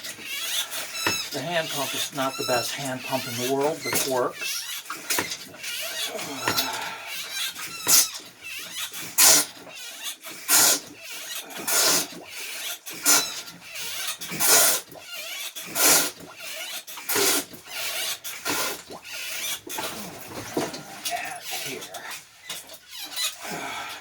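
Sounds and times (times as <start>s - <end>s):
hand pump sucking water: 0.0s - 24.0s.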